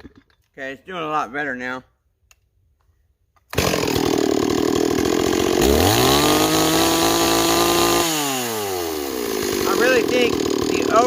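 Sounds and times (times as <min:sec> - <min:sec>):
chainsaw idling and revving: 0:03.5 - 0:11.0.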